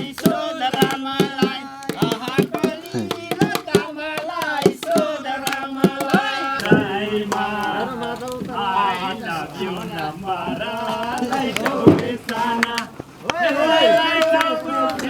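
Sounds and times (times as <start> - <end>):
people singing folk song: 0.0 - 15.0.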